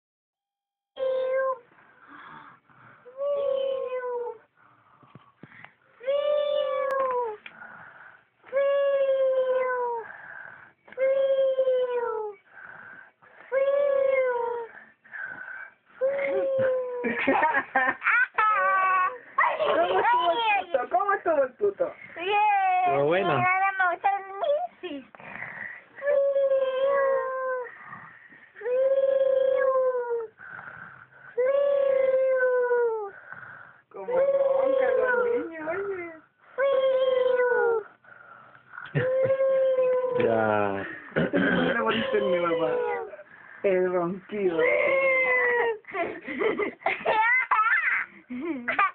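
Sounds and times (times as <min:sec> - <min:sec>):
soft breathing: 0:01.7 - 0:03.4, 0:04.4 - 0:06.0, 0:07.4 - 0:08.4, 0:09.8 - 0:10.9, 0:12.3 - 0:13.7, 0:14.5 - 0:16.2, 0:25.0 - 0:26.2, 0:27.4 - 0:28.8, 0:30.2 - 0:31.5, 0:37.7 - 0:39.0, 0:43.0 - 0:43.9
children snoring: 0:24.4 - 0:43.8
breathy hiss: 0:30.3 - 0:31.5, 0:37.7 - 0:39.0.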